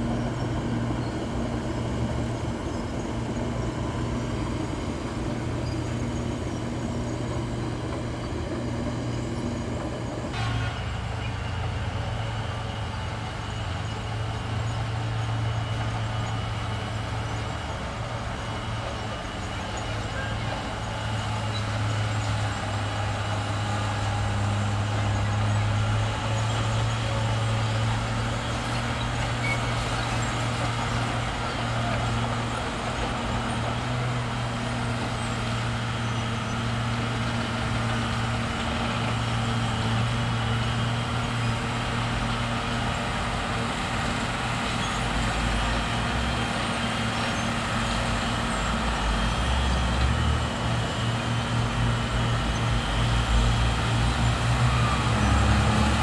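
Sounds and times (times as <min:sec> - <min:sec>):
bulldozer diesel engine running: 0:00.0 - 0:56.0.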